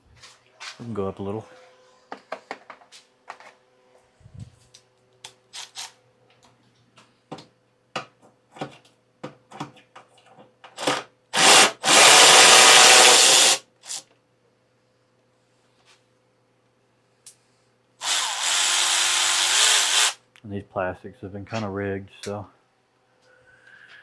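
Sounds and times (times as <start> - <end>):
tools and parts clicking: 5.2 - 6.5
cordless drill running: 10.8 - 14.0, 18.0 - 20.2.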